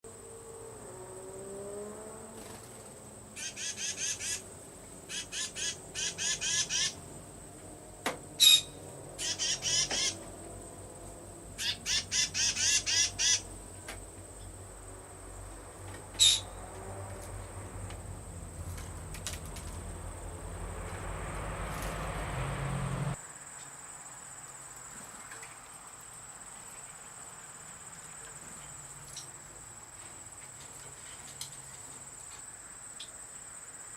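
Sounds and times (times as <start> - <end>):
birds calling rapid notes: 3.4 - 7.1, 8.4 - 10.3, 11.6 - 13.6, 16.1 - 16.7.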